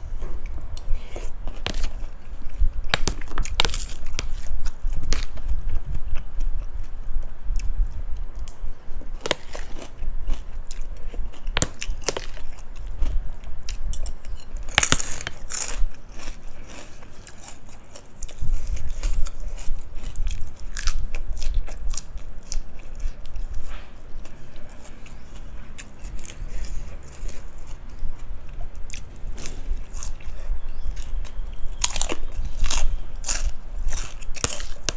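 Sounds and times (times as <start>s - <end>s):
crisp food crunching: 0.8s - 6.6s, 9.2s - 23.6s, 24.2s - 34.9s
chewing: 15.1s - 34.9s.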